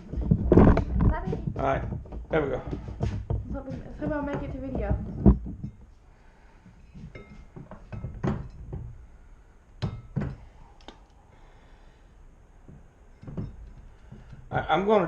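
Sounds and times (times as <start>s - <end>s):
metal tools knocking and clinking: 6.9s - 8.8s.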